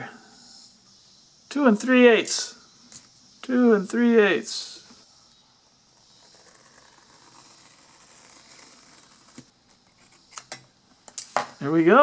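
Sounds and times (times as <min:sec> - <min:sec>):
foam being cut: 0:06.0 - 0:10.2.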